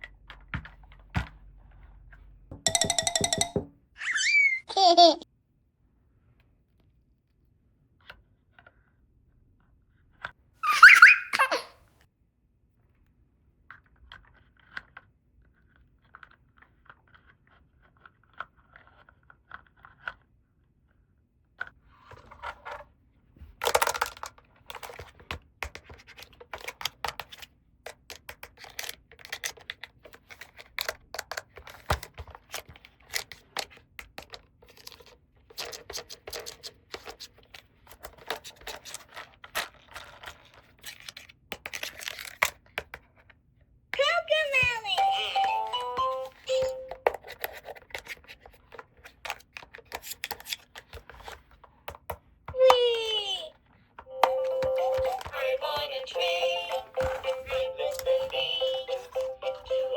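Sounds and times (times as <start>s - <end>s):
plastic clicks and scratches: 13.7s - 22.9s, 23.6s - 43.4s, 46.2s - 52.3s.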